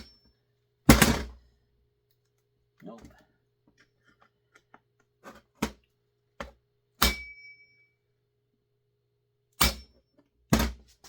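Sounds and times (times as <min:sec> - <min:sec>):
hammer hitting metal: 0:07.0 - 0:07.6, 0:09.6 - 0:09.9.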